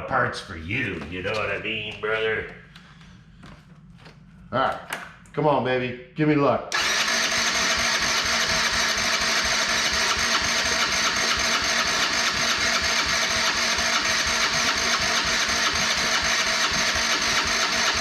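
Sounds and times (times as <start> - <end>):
engine cranking on starter: 6.7 - 18.0.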